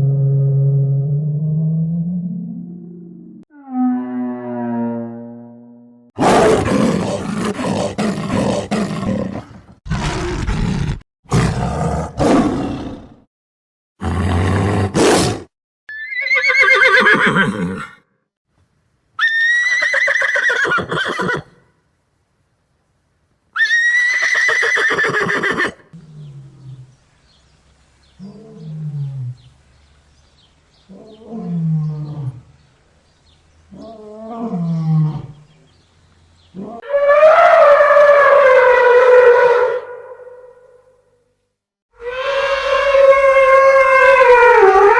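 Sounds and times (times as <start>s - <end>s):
horse whinnies: 15.9s - 18.0s, 19.2s - 21.6s, 23.6s - 25.8s.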